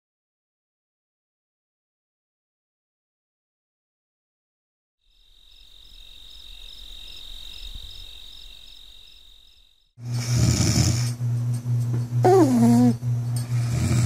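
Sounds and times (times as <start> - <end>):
cricket chirring: 5.0 - 10.0
dog snoring: 10.0 - 11.2, 12.2 - 14.0.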